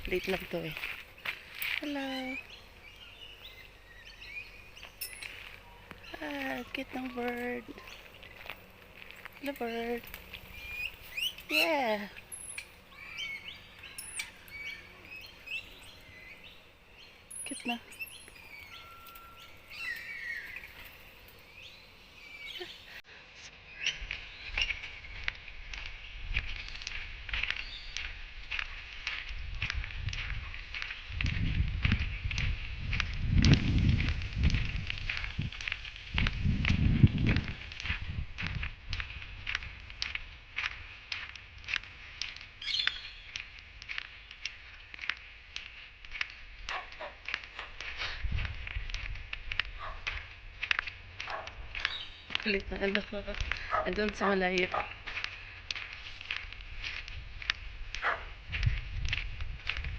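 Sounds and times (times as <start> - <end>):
birds chirping: 0.0 - 23.0, 42.6 - 43.5, 51.3 - 55.7
footsteps on a path: 0.0 - 59.9.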